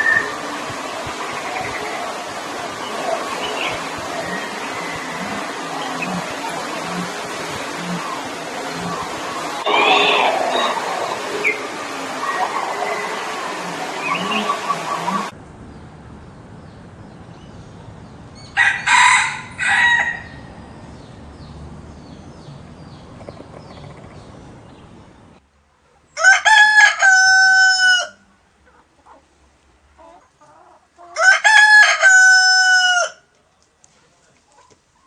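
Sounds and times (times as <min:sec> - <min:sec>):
rooster crowing: 0:00.0 - 0:15.3, 0:18.5 - 0:20.5, 0:26.2 - 0:28.3, 0:31.2 - 0:33.3
short harsh calls: 0:02.8 - 0:15.3.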